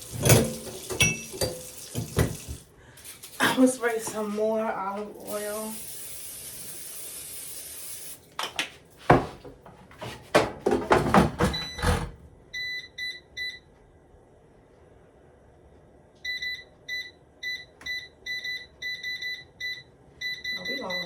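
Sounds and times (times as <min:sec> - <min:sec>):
cookware knocking and clattering: 0:00.1 - 0:02.6, 0:10.3 - 0:12.1
air fryer electronic beeps: 0:11.5 - 0:13.7, 0:16.2 - 0:21.0.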